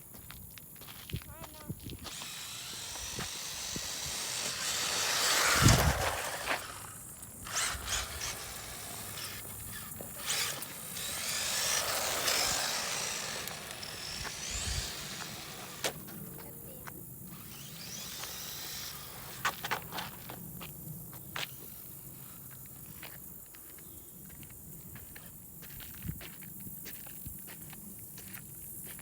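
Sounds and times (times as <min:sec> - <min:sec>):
electric motor whining: 0:01.3 - 0:20.3.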